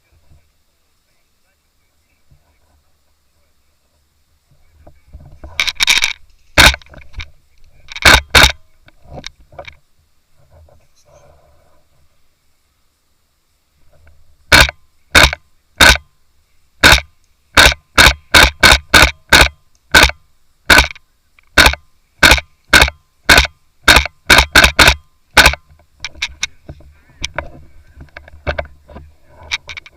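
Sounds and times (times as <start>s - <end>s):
faint rustling and crackling: 0.0s - 18.4s, 25.0s - 29.9s
airsoft rifle shots: 5.6s - 7.0s, 7.9s - 8.6s, 14.5s - 16.1s, 16.8s - 25.7s.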